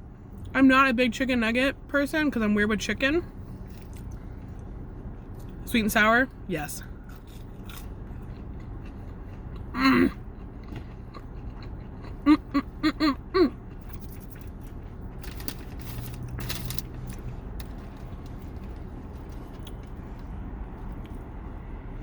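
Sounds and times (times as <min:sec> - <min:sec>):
person humming while eating: 0:12.2 - 0:13.6.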